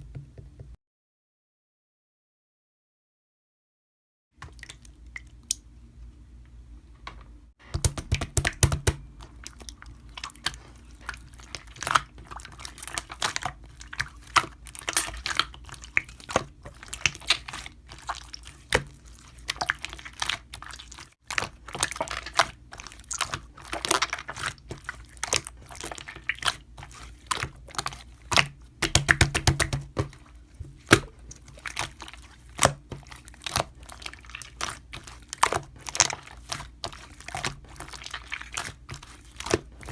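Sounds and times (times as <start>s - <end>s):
slime squeezed with sticky pops: 11.6s - 39.9s.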